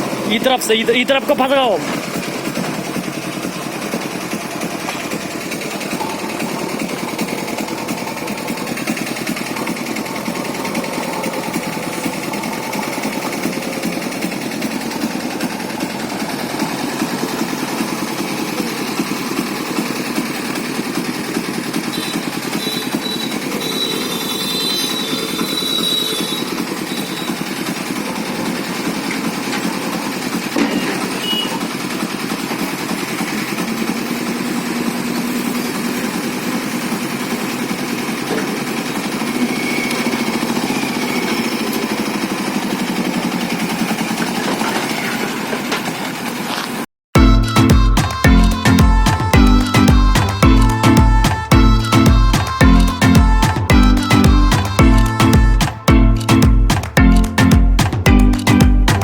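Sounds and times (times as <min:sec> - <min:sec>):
diesel engine clattering: 0:00.0 - 0:59.0.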